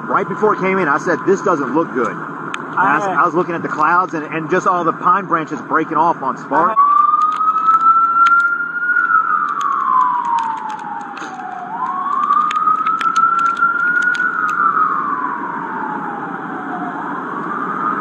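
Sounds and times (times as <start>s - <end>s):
emergency vehicle siren wailing: 0.0s - 18.0s
sharp clicks: 7.1s - 14.7s.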